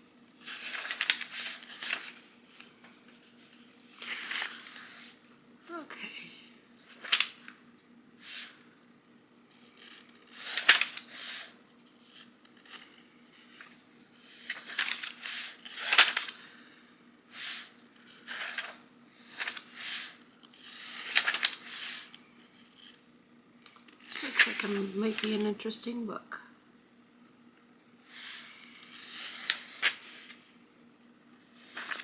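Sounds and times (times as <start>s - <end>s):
book pages rustling: 0.3s - 5.2s, 6.8s - 7.6s, 9.5s - 16.6s, 17.4s - 23.0s, 23.7s - 25.6s, 28.2s - 30.5s, 31.6s - 32.0s.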